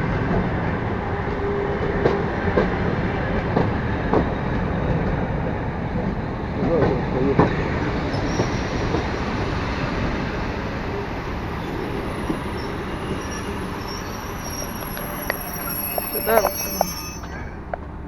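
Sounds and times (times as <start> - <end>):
train wheels rumbling on rails: 0.0 - 18.0
faint high wheel squeal: 8.0 - 9.6, 11.6 - 17.8.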